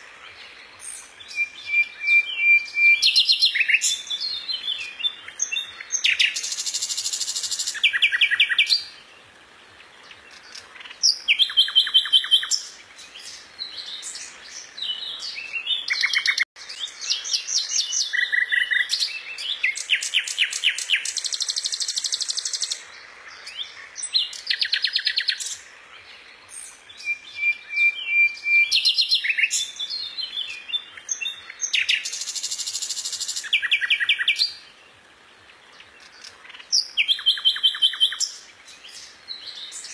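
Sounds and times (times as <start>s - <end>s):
songbird singing trills: 0.0s - 39.9s.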